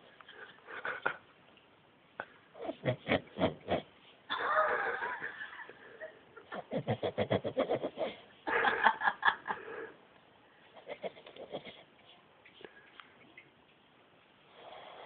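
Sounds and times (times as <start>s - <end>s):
person laughing: 4.3s - 9.9s.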